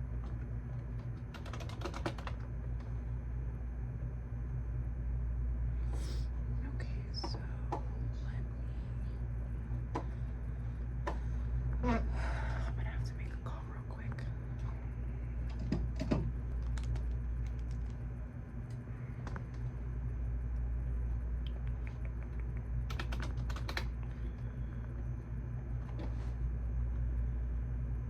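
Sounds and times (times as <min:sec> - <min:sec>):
low hum: 0:00.0 - 0:28.0
keyboard keystrokes: 0:01.0 - 0:02.5, 0:16.0 - 0:18.0, 0:21.7 - 0:24.0.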